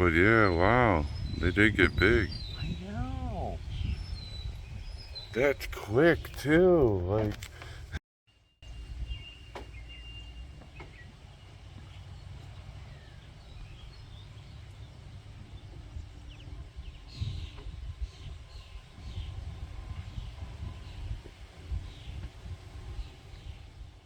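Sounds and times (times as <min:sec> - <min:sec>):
low background rumble: 0:00.0 - 0:08.0
faint high bird chirps: 0:00.2 - 0:06.4, 0:08.4 - 0:19.4.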